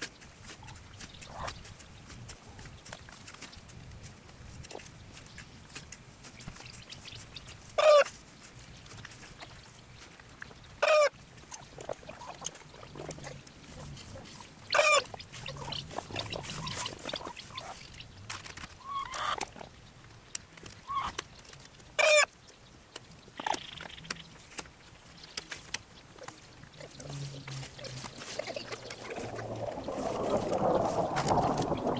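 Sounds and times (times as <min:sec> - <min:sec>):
chickens clucking: 0:00.6 - 0:03.4, 0:06.4 - 0:08.1, 0:10.5 - 0:18.2, 0:18.8 - 0:19.8, 0:20.8 - 0:21.2, 0:22.0 - 0:22.4
chicken squawks: 0:07.8 - 0:08.1, 0:10.8 - 0:11.1, 0:14.7 - 0:17.7, 0:18.8 - 0:19.4, 0:20.8 - 0:21.2, 0:22.0 - 0:22.3.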